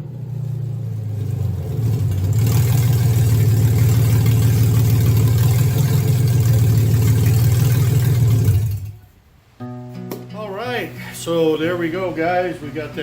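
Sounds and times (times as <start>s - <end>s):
engine running steadily: 0.0s - 9.1s.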